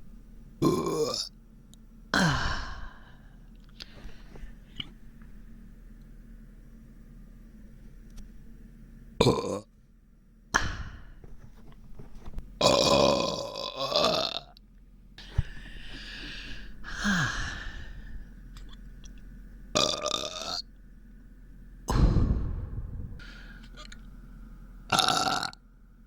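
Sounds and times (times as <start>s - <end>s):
person burping: 9.2s - 9.7s, 12.6s - 14.5s, 24.9s - 25.6s.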